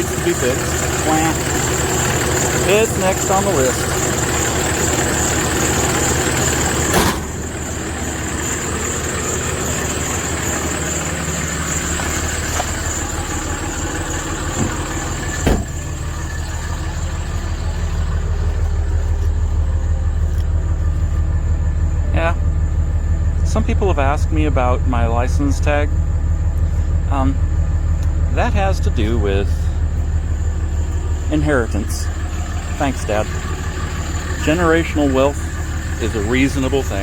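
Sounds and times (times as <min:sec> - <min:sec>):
diesel engine idling: 0:00.0 - 0:37.0
sharp knocks: 0:14.6 - 0:15.8.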